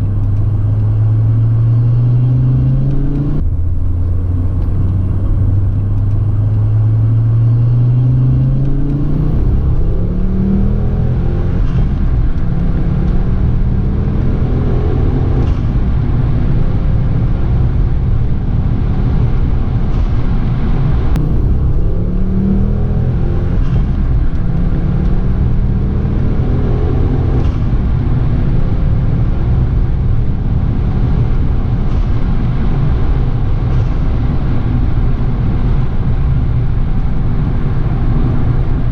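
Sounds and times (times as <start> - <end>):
car engine accelerating: 0.0 - 38.9
road noise rumble: 0.0 - 38.9.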